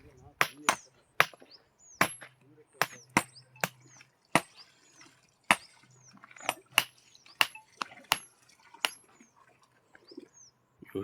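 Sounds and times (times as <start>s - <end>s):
hammer blows on stone: 0.4s - 4.6s, 5.5s - 5.8s, 6.5s - 9.0s.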